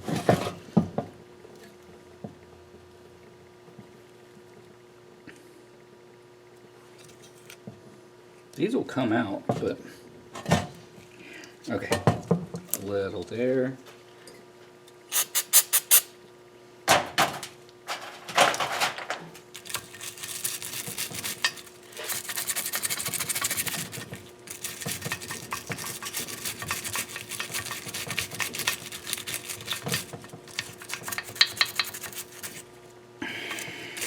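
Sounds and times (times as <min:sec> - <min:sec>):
rasping scrubbing on metal: 0:19.6 - 0:32.7.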